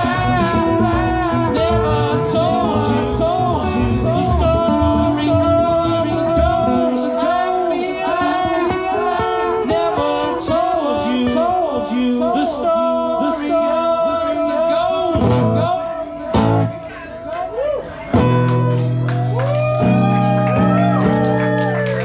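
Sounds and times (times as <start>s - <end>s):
lead guitar bent notes: 15.0s - 17.3s, 17.9s - 21.3s
live band playing: 15.2s - 22.0s.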